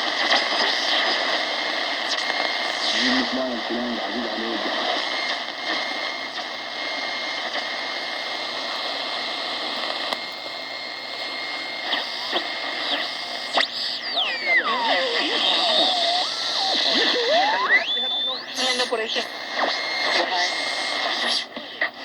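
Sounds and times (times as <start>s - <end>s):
radio static hiss: 0.0s - 22.0s
steady radio whistle: 0.0s - 22.0s
whistle sliding down in pitch: 15.7s - 18.8s.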